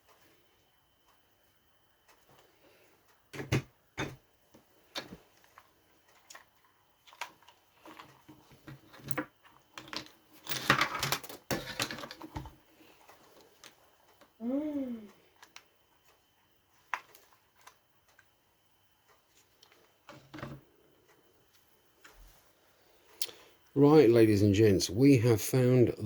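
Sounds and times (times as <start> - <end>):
tools and parts clicking: 5.0 - 12.5.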